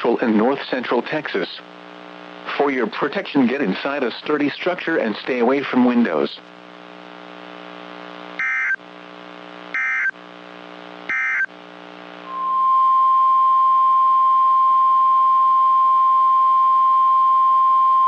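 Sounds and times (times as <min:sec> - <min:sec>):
buzzing receiver hum: 0:01.6 - 0:02.8, 0:03.4 - 0:18.0
loud steady warning alarm tone: 0:08.4 - 0:08.8, 0:09.7 - 0:10.2, 0:11.1 - 0:11.5
warbling digital data bursts: 0:08.4 - 0:08.8, 0:09.8 - 0:10.1, 0:11.1 - 0:11.5.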